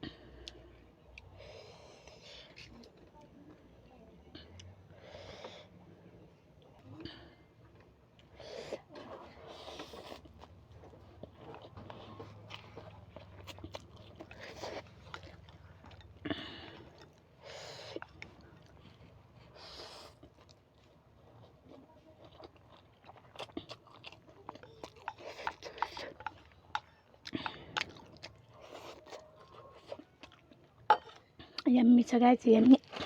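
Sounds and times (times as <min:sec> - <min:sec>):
wet chewing clicks: 0:09.8 - 0:17.3, 0:20.1 - 0:31.8.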